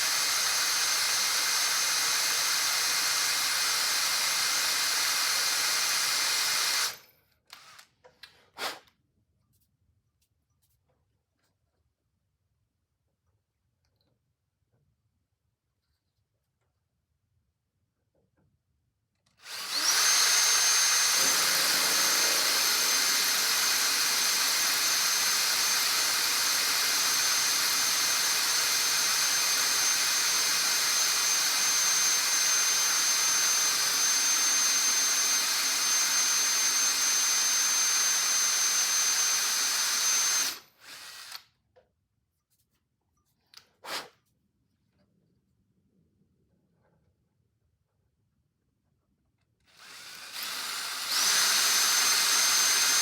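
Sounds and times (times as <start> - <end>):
electric drill whining: 0.0 - 7.9, 19.4 - 41.5, 49.7 - 53.0.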